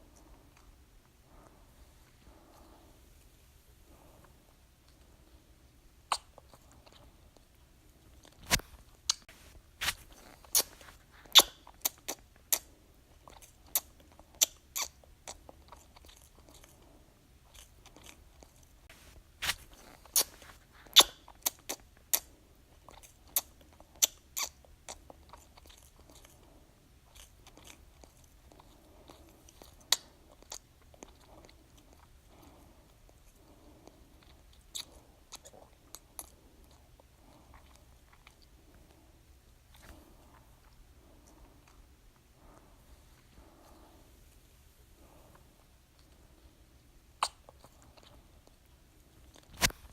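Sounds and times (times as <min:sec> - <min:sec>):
baby sucking on a pacifier: 0:08.1 - 0:16.8, 0:17.5 - 0:26.4, 0:47.2 - 0:48.5.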